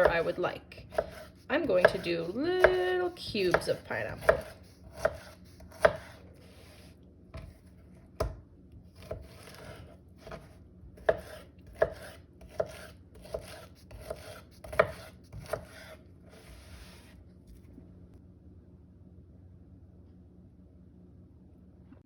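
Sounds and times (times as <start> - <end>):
knife slicing and scraping: 0.0 - 8.1, 8.9 - 17.7.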